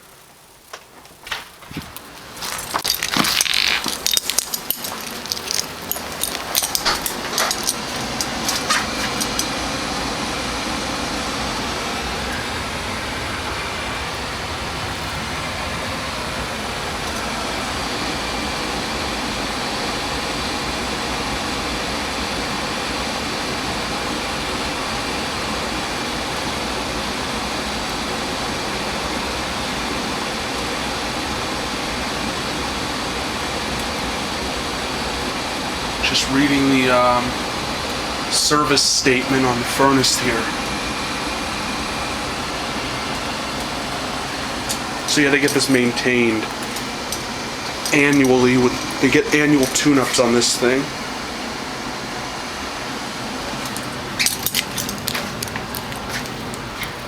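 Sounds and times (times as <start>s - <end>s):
gas furnace whooshing and humming: 0.0s - 57.0s
clicking and rattling: 0.6s - 12.5s, 43.1s - 50.8s, 53.6s - 57.0s.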